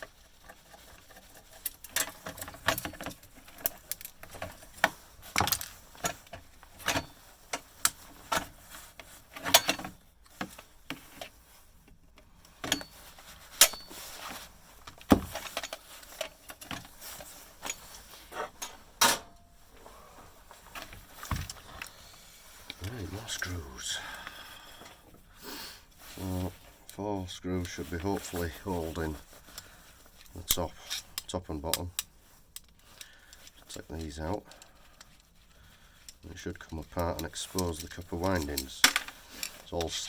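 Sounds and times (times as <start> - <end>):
hand tools clicking on metal and plastic: 0.0 - 14.0, 27.6 - 40.0.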